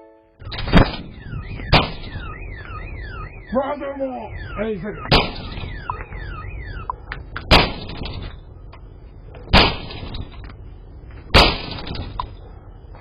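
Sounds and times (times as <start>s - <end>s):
falling electronic alarm tone: 0.4s - 7.0s
loud sharp bangs: 0.4s - 12.4s.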